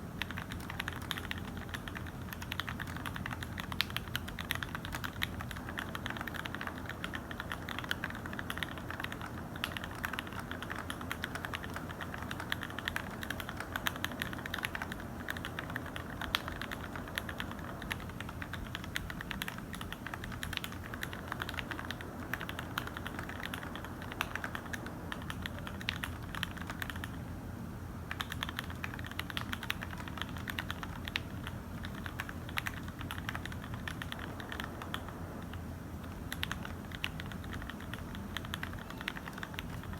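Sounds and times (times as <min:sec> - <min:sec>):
mechanical keyboard typing: 0:00.2 - 0:27.2, 0:28.1 - 0:39.9.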